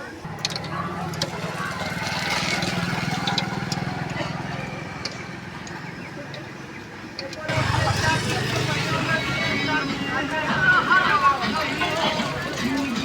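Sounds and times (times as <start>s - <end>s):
small engine running: 0.5s - 6.0s, 7.5s - 9.8s.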